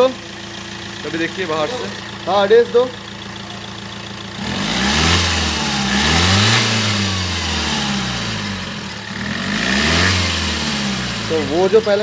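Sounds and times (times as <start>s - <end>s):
car engine revving: 3.3s - 12.0s.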